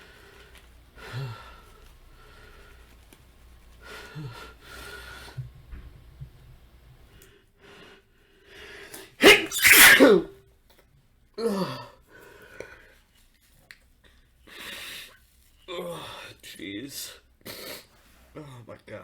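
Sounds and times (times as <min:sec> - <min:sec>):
man sneezing: 0:09.2 - 0:10.3.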